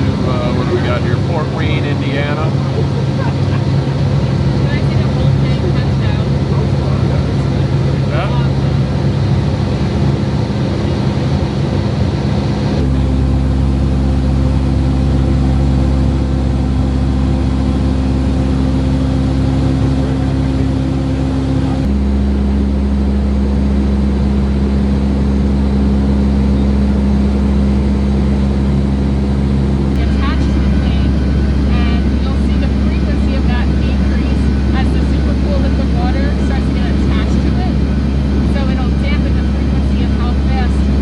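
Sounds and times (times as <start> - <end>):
turboprop engines droning: 0.0 - 41.0.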